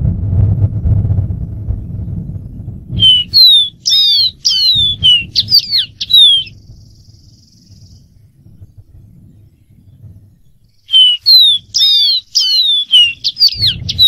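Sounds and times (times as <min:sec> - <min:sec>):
faint buzzy bird trill: 0:01.7 - 0:14.0
bird singing whistled notes: 0:02.9 - 0:14.0.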